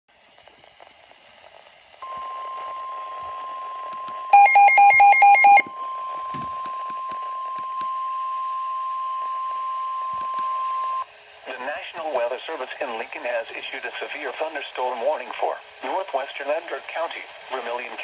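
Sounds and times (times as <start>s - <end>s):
faint static clicks: 0.1s - 5.5s, 9.4s - 18.0s
faint radio hiss: 0.1s - 6.2s, 10.6s - 18.0s
steady high alarm tone: 4.3s - 5.7s
quick electronic beeps: 4.4s - 5.6s.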